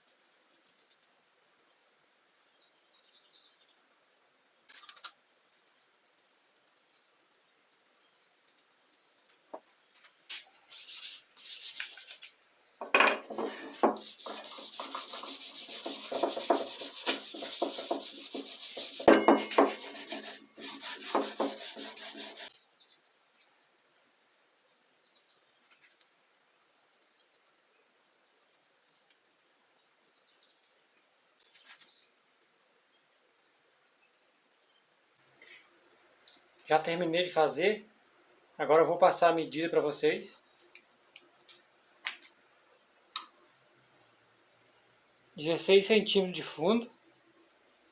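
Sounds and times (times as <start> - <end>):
faint hiss: 0.0 - 47.9
rubbing on wood: 10.0 - 12.3, 13.3 - 22.5.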